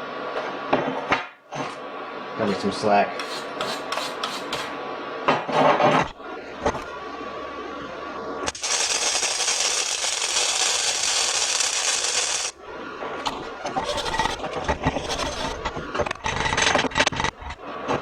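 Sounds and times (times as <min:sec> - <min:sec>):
welding arc crackling sizzle: 0:06.1 - 0:18.0
short crackles and scrapes: 0:08.5 - 0:18.0.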